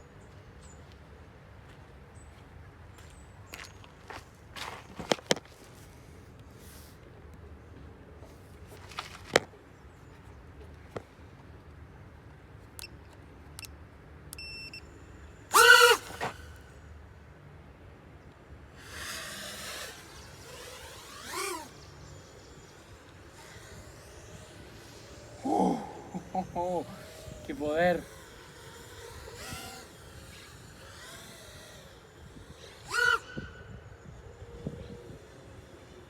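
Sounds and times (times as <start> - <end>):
short electronic beeps: 14.4 - 14.9
drone motors whining: 14.4 - 17.1, 18.6 - 36.0.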